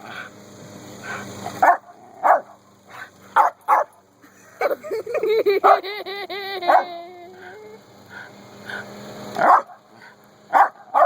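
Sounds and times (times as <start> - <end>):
dog barking and yipping: 1.4 - 4.0, 5.6 - 5.8, 9.4 - 9.8, 10.5 - 11.0.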